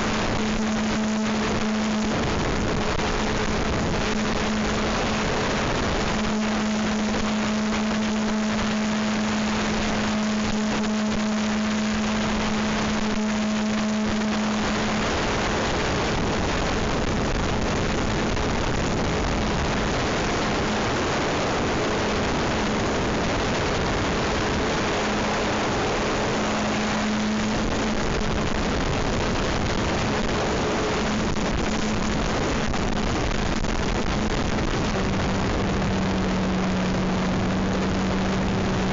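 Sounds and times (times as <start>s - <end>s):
helicopter motor and rotor hum: 0.0s - 36.9s
rushing wind noise: 0.0s - 38.9s.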